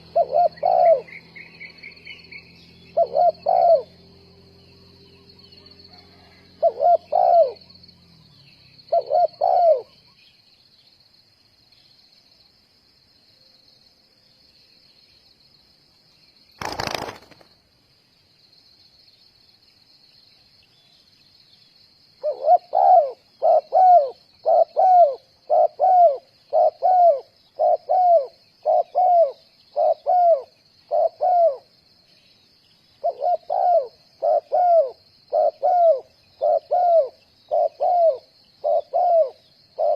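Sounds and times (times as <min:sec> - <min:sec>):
doves cooing: 0:00.0 - 0:01.2, 0:02.9 - 0:04.0, 0:05.6 - 0:07.8, 0:08.9 - 0:10.0, 0:22.2 - 0:31.7, 0:33.0 - 0:39.9.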